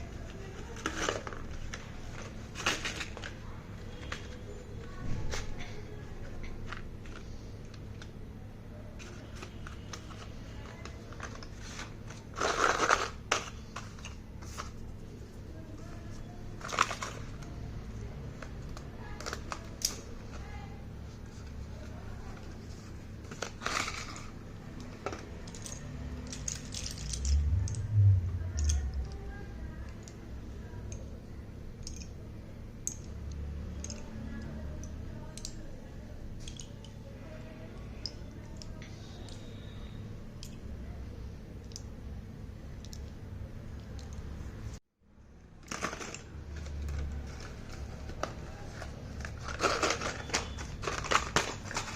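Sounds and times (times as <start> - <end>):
low rumble of handling: 20.3 - 30.3
slate pencils clicking: 31.8 - 32.2, 32.8 - 35.7, 36.4 - 37.0
packaging crinkling: 45.6 - 51.9
packaging rustling: 45.6 - 51.9.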